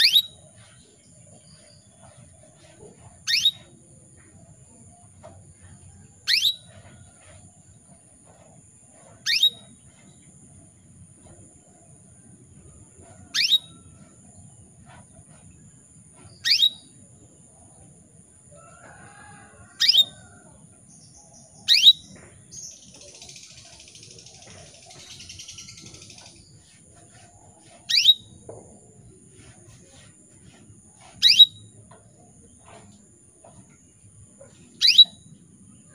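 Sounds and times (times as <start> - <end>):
canary chirping: 0.0 - 0.7, 2.6 - 3.7, 6.3 - 7.0, 9.1 - 9.8, 13.3 - 13.8, 16.3 - 16.9, 21.6 - 26.5, 27.1 - 28.4, 29.9 - 31.7, 34.4 - 35.3
soft hissy bird call: 31.2 - 31.6.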